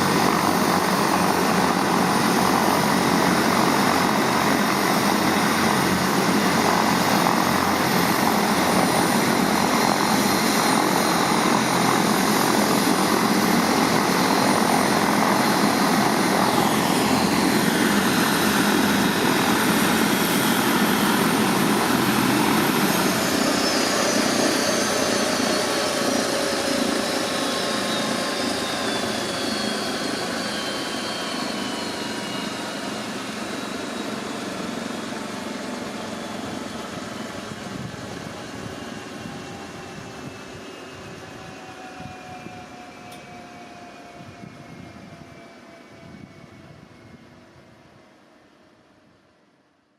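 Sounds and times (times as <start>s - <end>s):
high turbine whine: 0.0s - 49.8s
helicopter rotor and engines: 0.0s - 49.9s.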